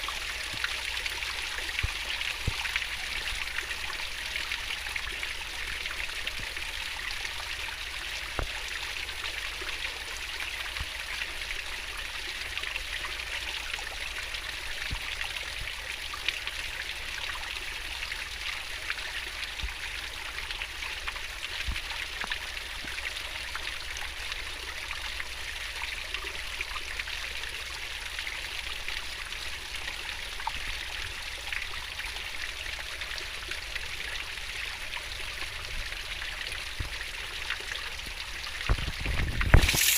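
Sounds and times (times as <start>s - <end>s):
small splashes: 38.7s - 39.9s.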